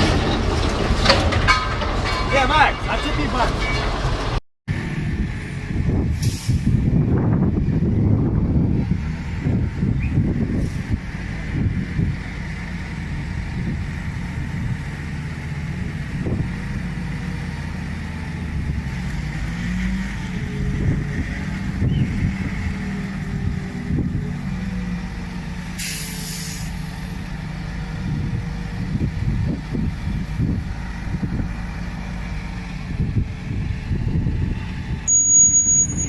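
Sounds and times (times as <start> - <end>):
heavy diesel engine running: 0.0 - 35.1
air hiss burst: 25.8 - 26.9.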